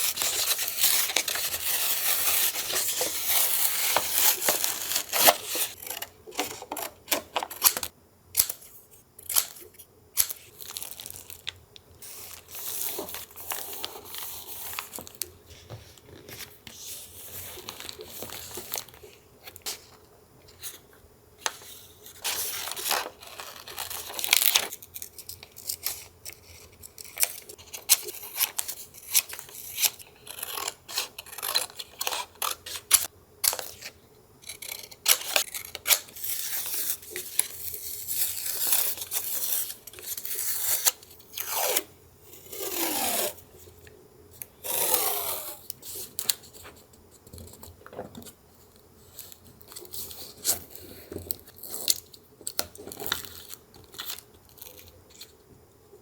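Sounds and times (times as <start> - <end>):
paper tearing and crinkling: 0.0 - 7.9, 22.2 - 26.0.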